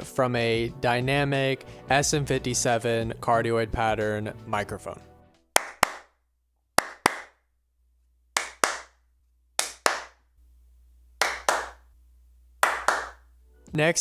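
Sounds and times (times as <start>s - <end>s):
hand claps with room echo: 5.6s - 6.1s, 6.8s - 7.4s, 8.4s - 9.0s, 9.6s - 10.2s, 11.2s - 11.8s, 12.6s - 13.2s.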